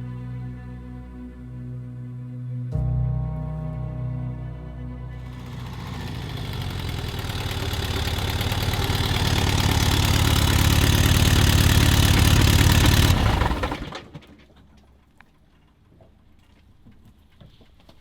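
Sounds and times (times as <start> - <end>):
vehicle engine running: 4.4 - 14.3.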